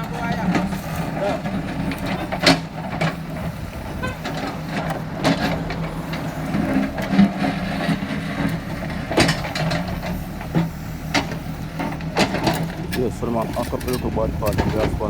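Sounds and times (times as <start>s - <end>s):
heavy engine idling: 0.0s - 15.0s.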